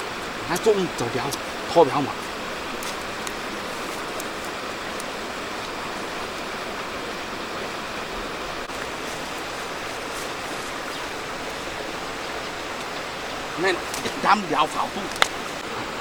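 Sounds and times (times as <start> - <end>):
water rushing over rocks: 0.0 - 16.0
faint ticks: 2.2 - 5.8, 14.9 - 15.6.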